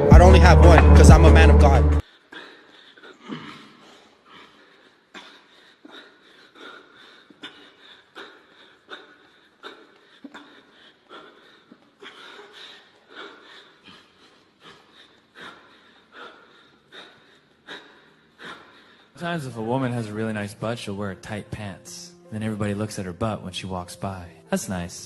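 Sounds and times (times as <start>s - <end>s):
person wheezing: 2.1s - 19.2s.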